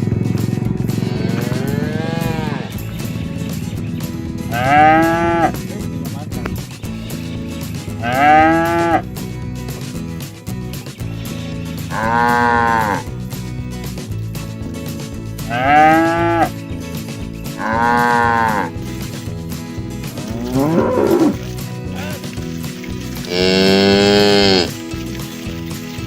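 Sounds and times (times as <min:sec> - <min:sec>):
cattle mooing: 0:00.8 - 0:02.9, 0:04.5 - 0:05.6, 0:08.0 - 0:09.0, 0:11.8 - 0:13.1, 0:15.4 - 0:16.6, 0:17.6 - 0:18.9, 0:20.1 - 0:21.5, 0:23.2 - 0:24.8.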